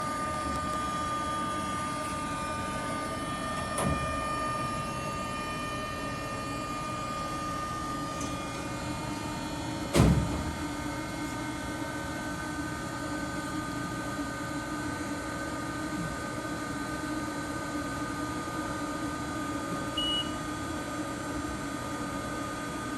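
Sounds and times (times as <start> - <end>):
machinery humming: 0.0 - 15.1
loud thump: 9.9 - 10.6.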